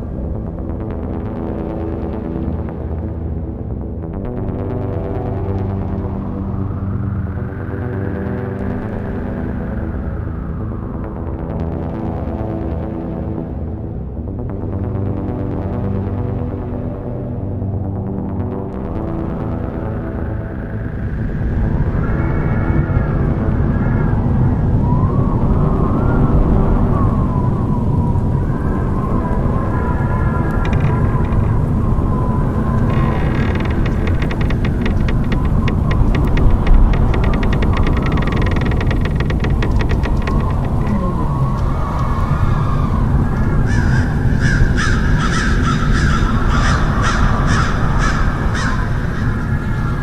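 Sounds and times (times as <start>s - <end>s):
deep rumbling drone: 18.2s - 50.0s
low rumble: 27.9s - 43.7s
crows cawing: 43.7s - 49.4s.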